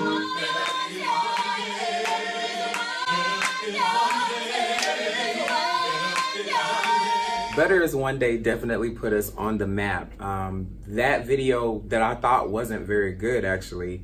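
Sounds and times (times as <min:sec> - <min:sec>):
vocal ensemble singing a cappella: 0:00.0 - 0:07.7.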